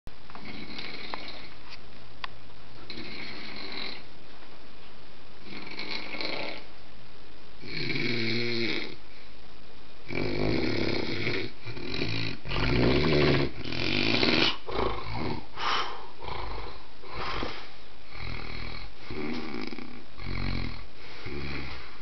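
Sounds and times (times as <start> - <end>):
dog snoring: 0.4 - 1.6, 2.9 - 4.1, 5.4 - 6.7, 7.6 - 9.0, 10.0 - 22.0.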